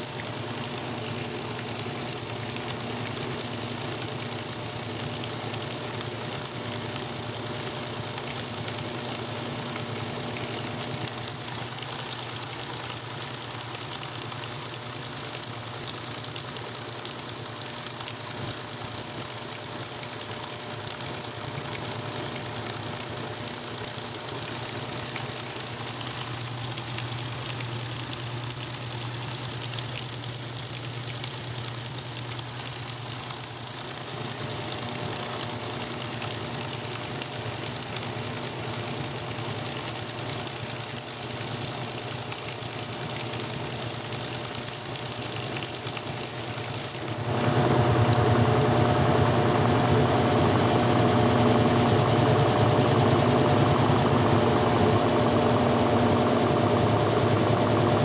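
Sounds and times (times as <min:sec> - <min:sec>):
washing machine motor hum: 0:00.0 - 0:58.0
water sloshing in washing machine: 0:00.0 - 0:58.0.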